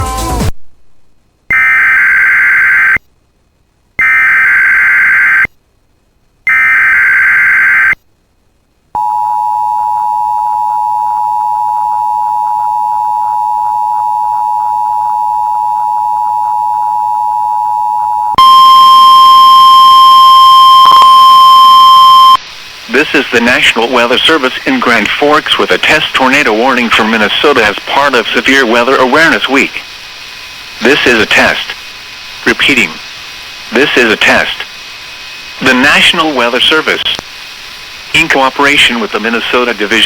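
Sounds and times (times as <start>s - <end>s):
warbling digital data tones: 6.5s - 8.0s
two-tone attention signal: 9.0s - 22.4s.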